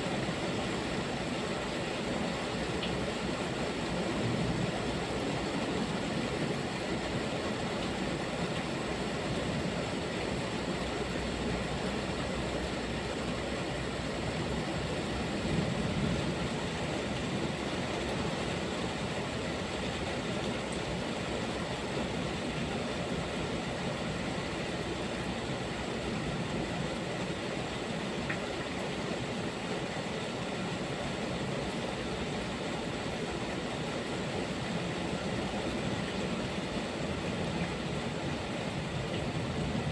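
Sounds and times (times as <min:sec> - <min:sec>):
heavy rainfall: 0:00.0 - 0:39.9
low rumble of thunder: 0:14.5 - 0:18.5, 0:37.1 - 0:39.9.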